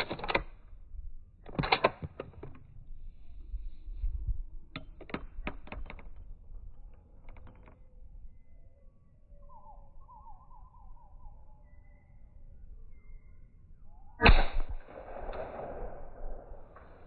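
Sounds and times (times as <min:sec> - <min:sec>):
rifle bolt metallic clicks: 0:00.0 - 0:00.6, 0:01.4 - 0:02.7, 0:04.7 - 0:06.3.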